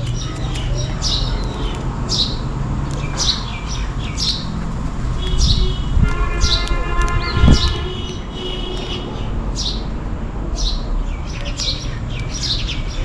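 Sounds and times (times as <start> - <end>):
sparrows chirping: 0.0 - 13.0
steady pitched hum: 3.5 - 6.6.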